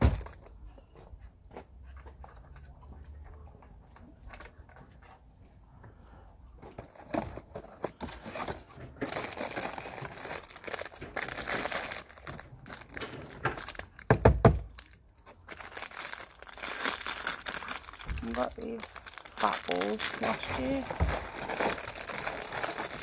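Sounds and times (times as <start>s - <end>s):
plastic packaging crinkling: 7.8s - 23.0s.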